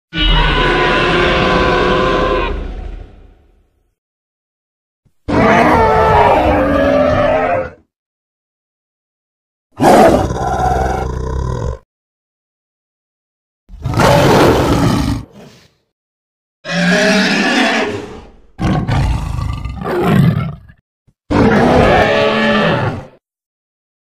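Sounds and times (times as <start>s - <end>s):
growling dinosaur roars: 0.1s - 3.6s, 5.3s - 7.9s, 9.8s - 11.8s, 13.7s - 15.7s, 16.6s - 23.2s.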